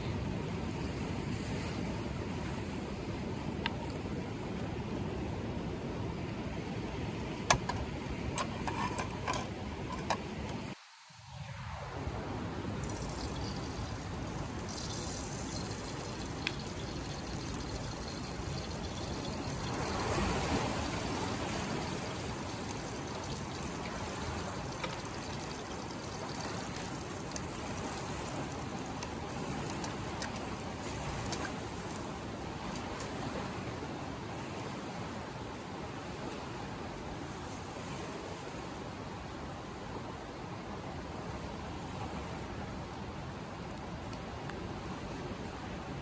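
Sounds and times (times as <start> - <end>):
faint clicks: 12.8 - 33.1
rushing water: 12.8 - 39.0.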